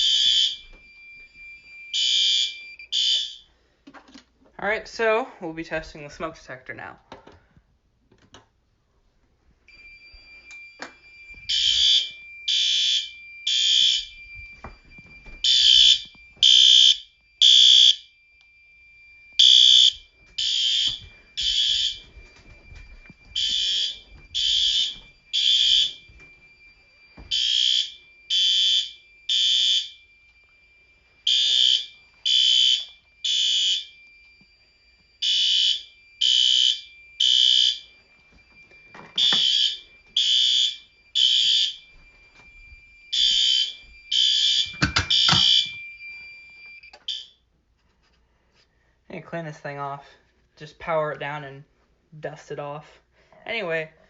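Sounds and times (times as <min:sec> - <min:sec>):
fire alarm horn honks: 0:01.9 - 0:03.4, 0:11.5 - 0:14.2, 0:31.2 - 0:34.0, 0:35.2 - 0:37.9, 0:43.1 - 0:45.8
faint steady high tone: 0:09.6 - 0:12.5, 0:13.1 - 0:16.4, 0:37.8 - 0:40.2.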